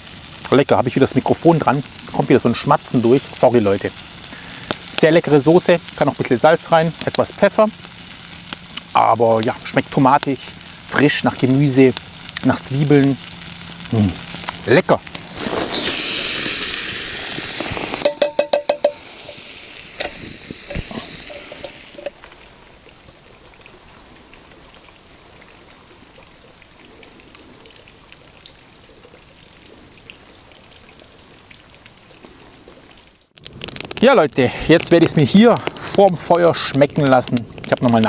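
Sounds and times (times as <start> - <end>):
fire crackling: 0.0 - 38.0
soup sizzling and bubbling: 0.0 - 38.0
ringing metallic taps: 18.1 - 19.0.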